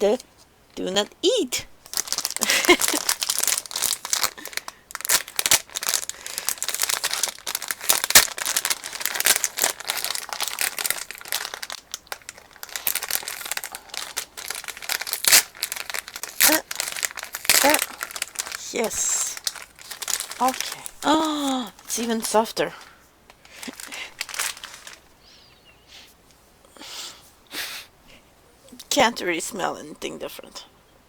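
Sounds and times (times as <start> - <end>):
plastic packaging crinkling: 1.8 - 25.1.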